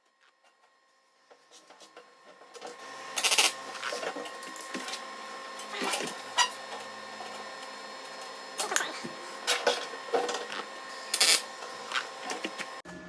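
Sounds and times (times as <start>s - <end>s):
electrical hum: 1.3s - 13.0s
tack welding crackling: 3.0s - 5.0s, 10.5s - 12.8s.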